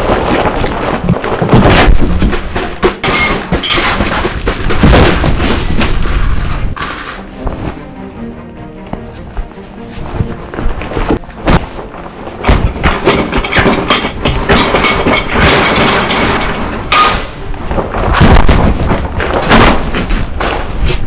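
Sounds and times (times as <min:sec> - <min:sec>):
foley knocks and thuds: 0:00.0 - 0:06.8, 0:10.0 - 0:21.0
sharp crack: 0:11.4 - 0:21.0.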